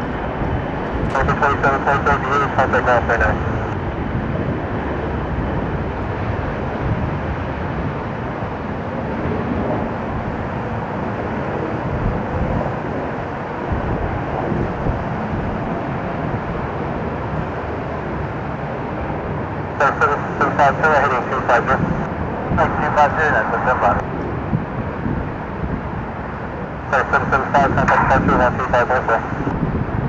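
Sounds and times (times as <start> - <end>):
wind buffeting microphone: 23.9 - 26.8, 29.2 - 30.0.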